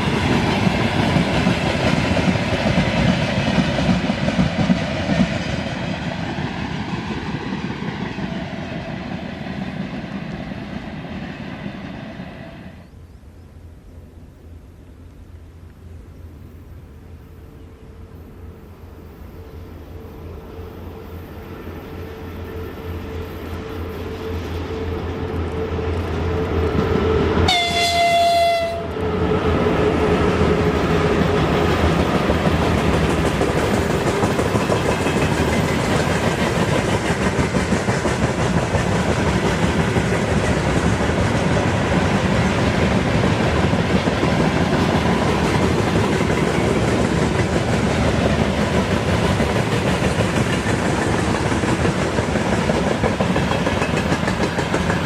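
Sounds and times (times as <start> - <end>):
freight train wheels rumbling: 0.0 - 12.9, 14.3 - 55.0
locomotive horn blast: 24.0 - 29.4.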